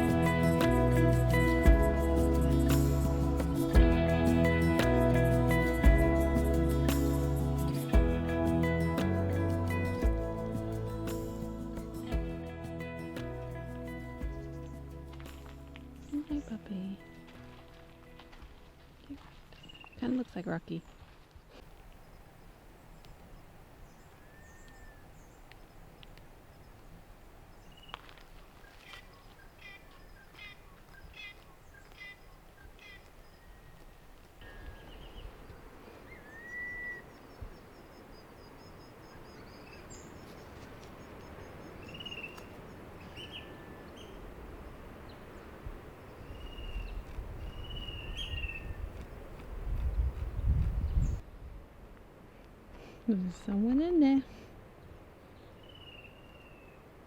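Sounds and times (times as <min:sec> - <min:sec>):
steady low hiss: 0:00.0 - 0:19.0, 0:21.6 - 0:57.0
birds chirping: 0:16.0 - 0:17.2, 0:19.6 - 0:49.4
faint high bird trill: 0:22.1 - 0:25.4, 0:28.6 - 0:33.8, 0:34.5 - 0:44.3, 0:46.1 - 0:48.8.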